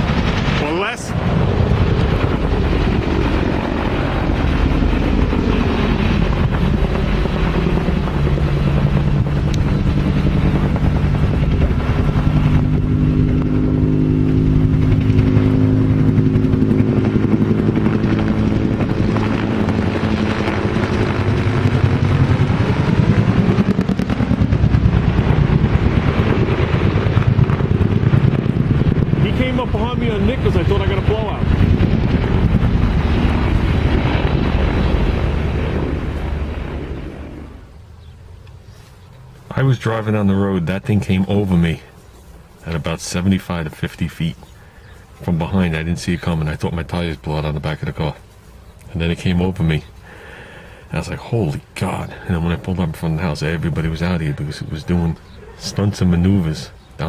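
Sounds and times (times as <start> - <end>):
helicopter rotor chopping: 0.0 - 37.8, 39.4 - 57.0.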